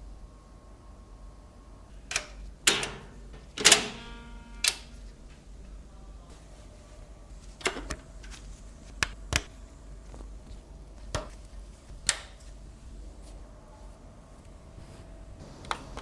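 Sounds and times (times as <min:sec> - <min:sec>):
sharp clicks and knocks: 0:02.1 - 0:04.9.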